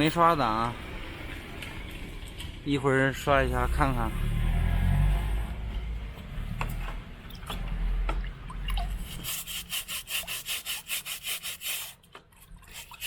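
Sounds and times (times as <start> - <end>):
stiff brush scrubbing a filter: 8.9 - 13.0.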